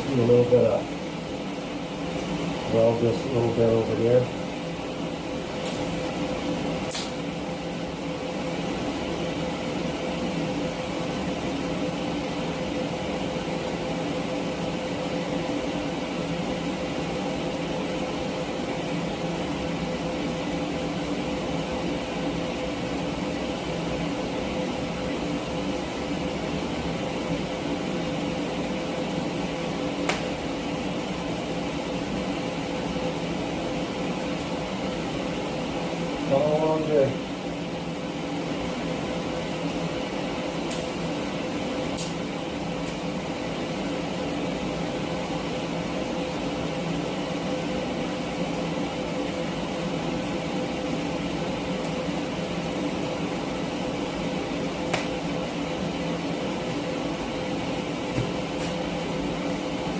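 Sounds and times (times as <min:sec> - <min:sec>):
welding arc buzzing: 0:05.1 - 0:07.8, 0:38.7 - 0:43.9.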